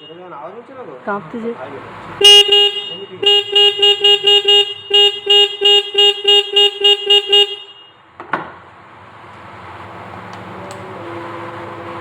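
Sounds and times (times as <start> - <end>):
motorcycle horn beeping: 0.0 - 0.4, 2.2 - 8.1.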